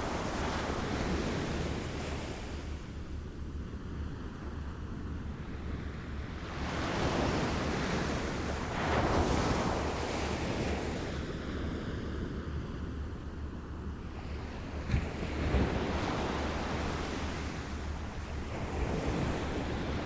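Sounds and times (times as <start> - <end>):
waves lapping on shore: 6.3 - 12.0.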